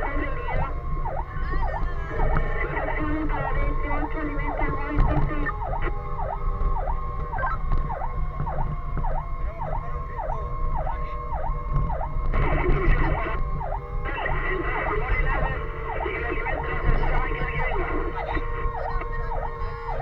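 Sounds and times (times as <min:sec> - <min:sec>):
fire engine siren: 0:00.0 - 0:20.0
truck engine and road rumble: 0:00.0 - 0:20.0
noisy sound: 0:11.0 - 0:20.0.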